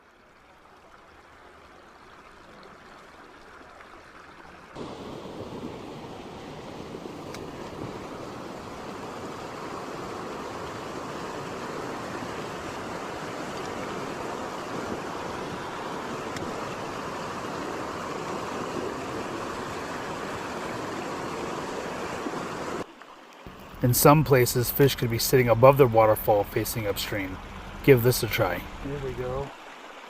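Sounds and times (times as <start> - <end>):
waterfall pouring: 23.5 - 30.0.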